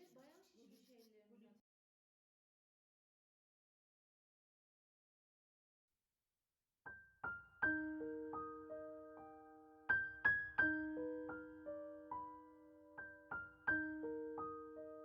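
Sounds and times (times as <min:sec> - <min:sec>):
soft piano melody: 0:06.9 - 0:15.0.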